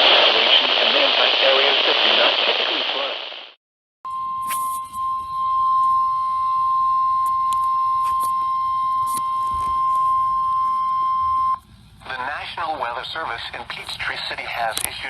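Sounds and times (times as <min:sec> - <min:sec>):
faint static crackles: 0:00.0 - 0:03.6
high pure alert tone: 0:04.1 - 0:11.5.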